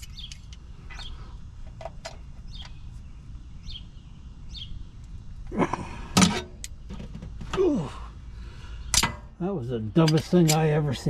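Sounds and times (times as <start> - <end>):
small bird chirping: 0.0 - 5.4
low background rumble: 0.0 - 11.0.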